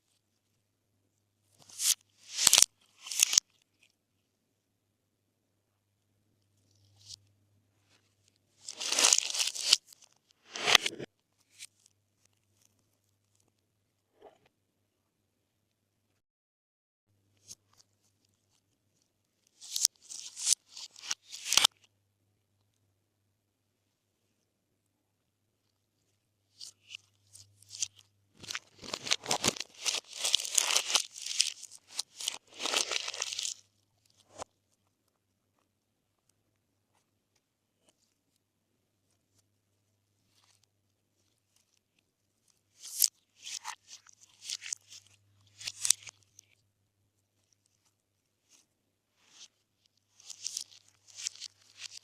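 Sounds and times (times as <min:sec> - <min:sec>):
slime crackling and squelching: 0:01.7 - 0:03.6, 0:08.6 - 0:11.8, 0:26.7 - 0:34.5, 0:41.2 - 0:46.6, 0:49.3 - 0:52.0
sticky slime popping and crackling: 0:28.4 - 0:33.6.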